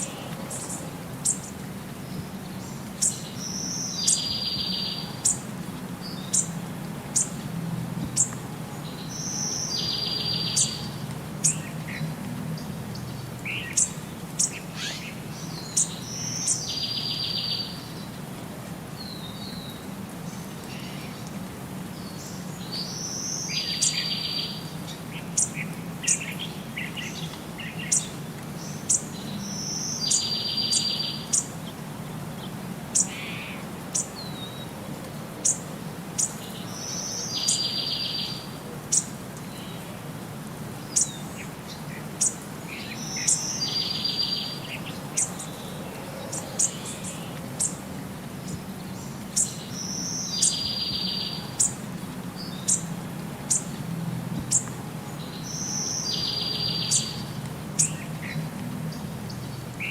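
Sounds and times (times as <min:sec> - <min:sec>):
birds chirping: 0:00.0 - 0:07.4, 0:08.0 - 0:18.2, 0:40.8 - 0:59.9.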